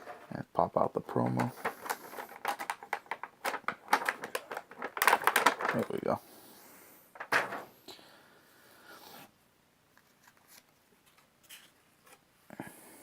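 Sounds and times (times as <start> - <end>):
plastic packaging rustling: 1.1 - 6.2.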